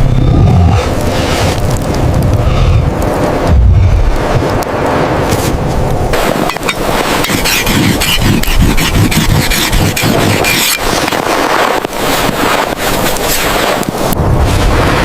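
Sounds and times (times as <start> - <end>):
strong gusty wind: 0.0 - 15.0
knocks and scrapes: 5.2 - 14.6.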